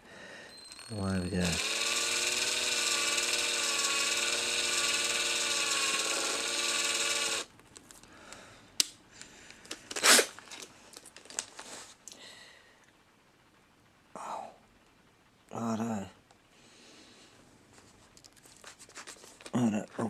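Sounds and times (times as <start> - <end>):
small electric drill running: 0.5 - 7.5.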